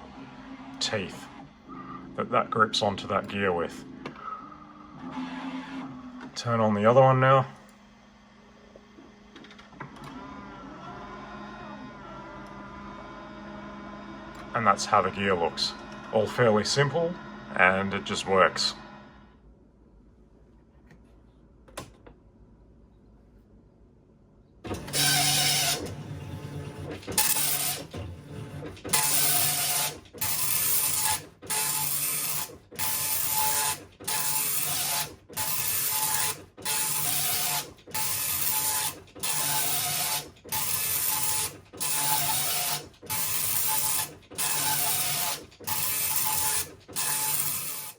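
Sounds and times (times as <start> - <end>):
dot matrix printer printing: 0.0 - 7.5, 24.7 - 47.9.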